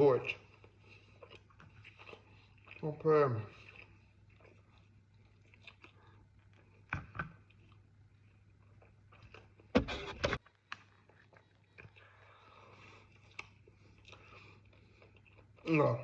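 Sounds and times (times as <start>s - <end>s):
faint steady hum: 0.0s - 16.0s
biting and chewing: 0.2s - 12.3s.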